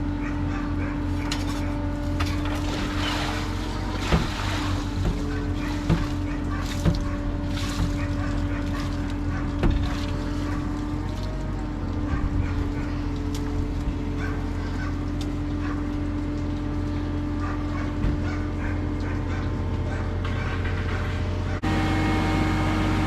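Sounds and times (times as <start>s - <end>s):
steady machine hum: 0.0s - 23.0s.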